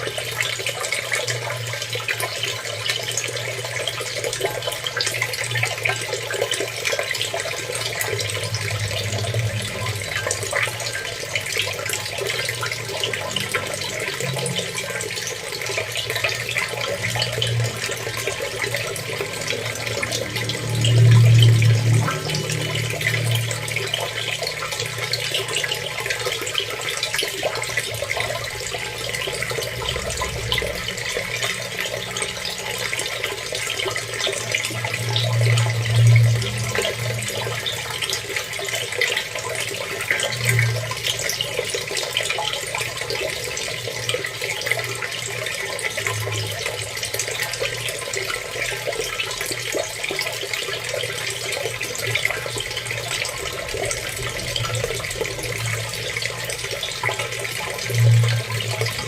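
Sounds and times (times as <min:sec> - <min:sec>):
water running and splashing: 0:00.0 - 0:59.0
low rumble: 0:17.0 - 0:24.8.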